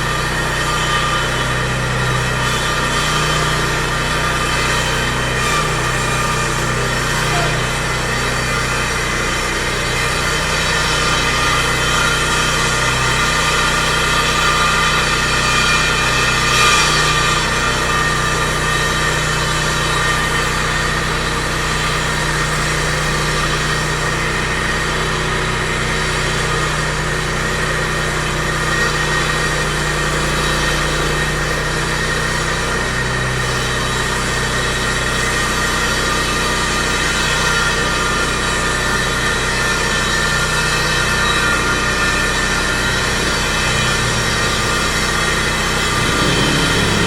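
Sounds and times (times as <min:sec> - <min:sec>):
engine idling: 0:42.4 - 0:47.0.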